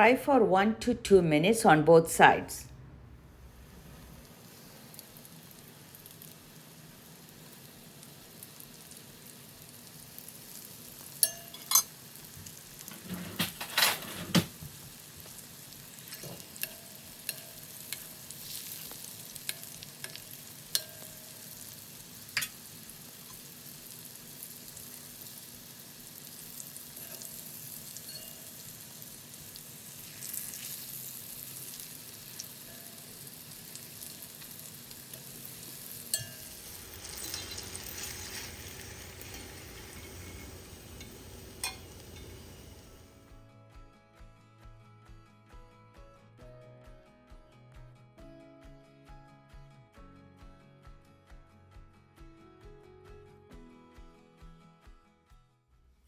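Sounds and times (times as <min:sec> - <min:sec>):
oil sizzling while deep-frying: 0:03.5 - 0:43.3.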